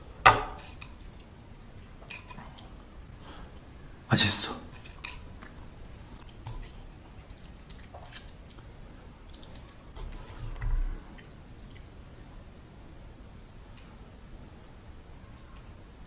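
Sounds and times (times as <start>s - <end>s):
soft chewing with mouth clicks: 0.5s - 4.0s, 4.6s - 16.0s.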